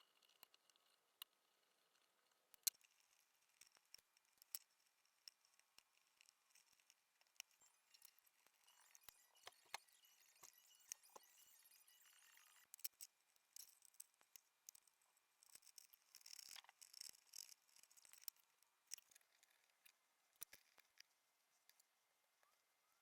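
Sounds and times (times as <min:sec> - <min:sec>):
small parts clicking and tapping: 0:00.0 - 0:22.6.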